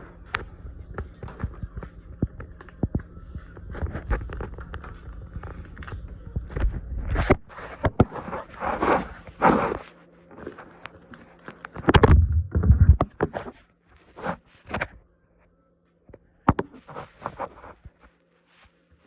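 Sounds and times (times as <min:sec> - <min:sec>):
faint steady hum: 0:00.0 - 0:19.0
heavy thumps: 0:11.9 - 0:13.2.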